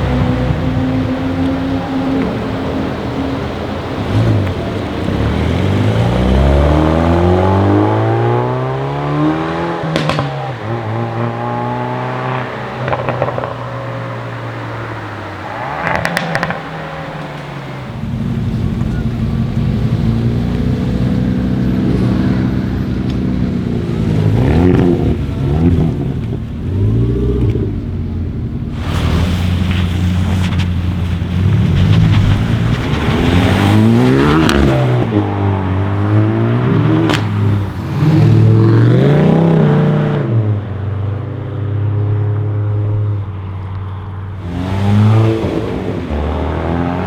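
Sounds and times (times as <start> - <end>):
car engine revving: 0.0 - 47.0
exhaust pops and crackles: 9.8 - 11.0, 12.4 - 14.3, 15.8 - 36.0, 36.7 - 37.9.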